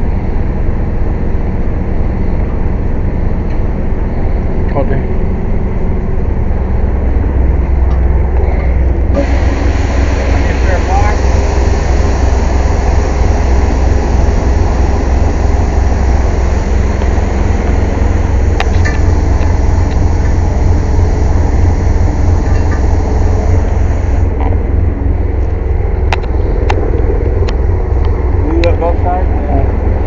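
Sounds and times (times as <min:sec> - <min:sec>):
air compressor droning: 0:03.7 - 0:30.0
air hiss: 0:09.2 - 0:24.3.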